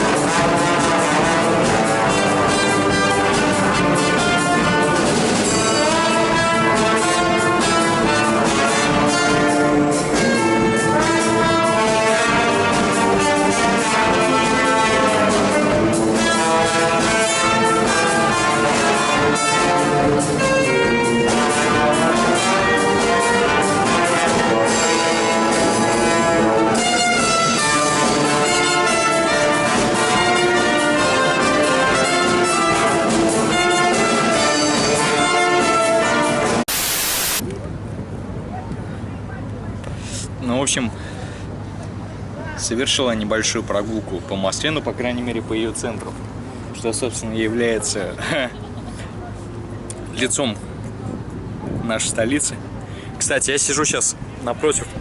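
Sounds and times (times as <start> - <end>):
brass band playing: 0.0 - 37.4.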